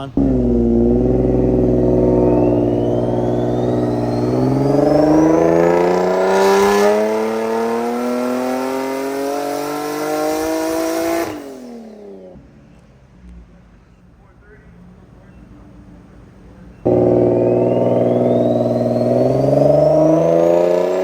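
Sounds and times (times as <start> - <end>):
car engine revving: 0.0 - 12.4, 16.8 - 21.0.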